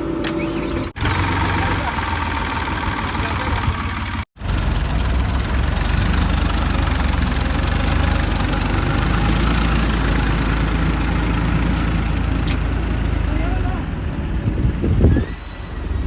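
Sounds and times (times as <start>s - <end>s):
diesel engine idling: 0.0s - 16.0s.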